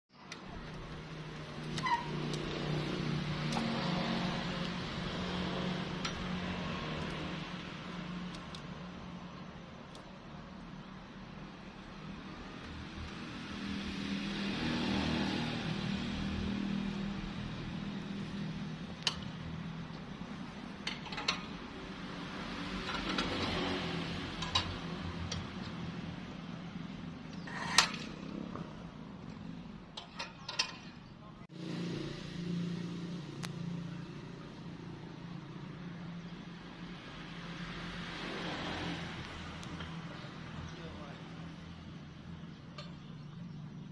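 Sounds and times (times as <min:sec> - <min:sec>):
engine running: 0:00.2 - 0:10.6.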